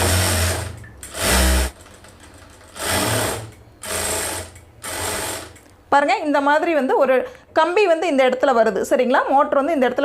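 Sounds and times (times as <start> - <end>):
sewing machine running: 0.0 - 5.6.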